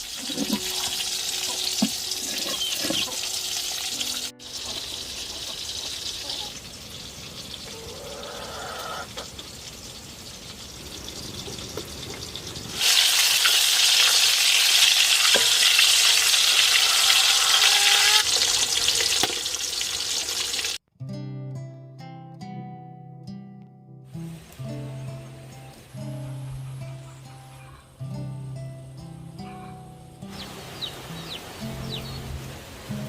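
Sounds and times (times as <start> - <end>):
food sizzling in hot oil: 0.0 - 20.8.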